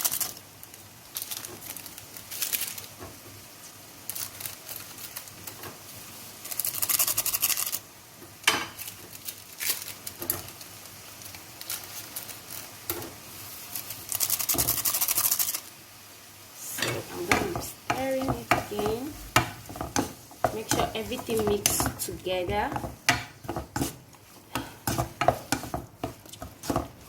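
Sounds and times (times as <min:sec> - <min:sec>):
sachets tearing and rustling: 0:00.0 - 0:03.0, 0:04.0 - 0:05.6, 0:08.8 - 0:12.7.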